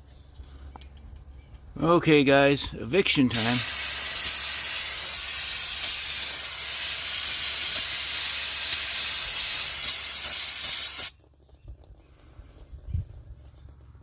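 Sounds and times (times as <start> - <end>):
spray hissing: 3.3 - 11.1.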